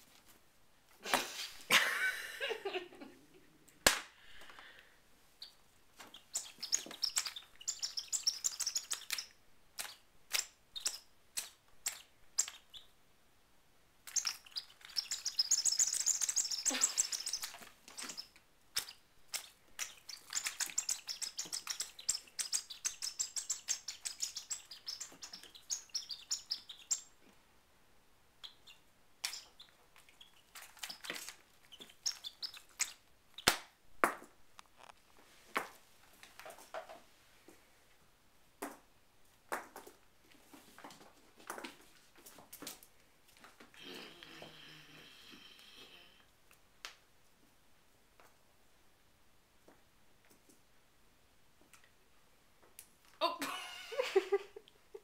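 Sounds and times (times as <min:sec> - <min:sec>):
cat chirping and clicking: 0:05.4 - 0:12.9, 0:14.0 - 0:27.2, 0:28.4 - 0:33.6.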